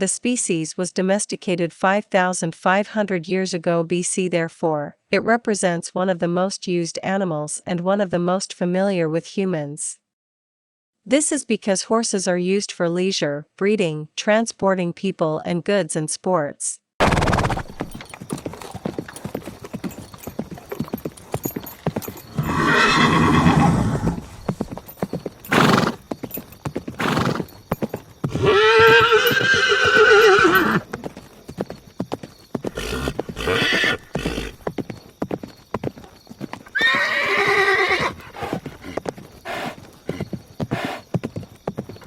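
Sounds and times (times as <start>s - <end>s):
horse neighing: 17.0s - 31.0s, 32.6s - 34.7s, 36.6s - 41.1s
horse hooves clip-clopping: 17.1s - 42.0s.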